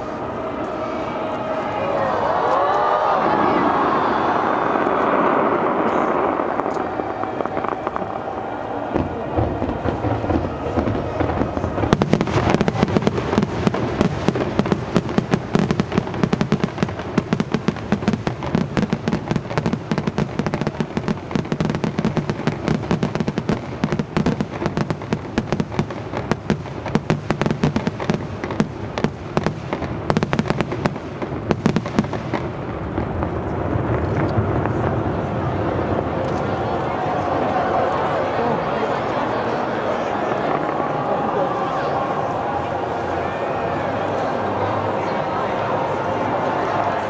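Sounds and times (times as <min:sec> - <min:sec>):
low rumble: 0:03.1 - 0:16.1
fireworks crackling and popping: 0:04.2 - 0:36.6.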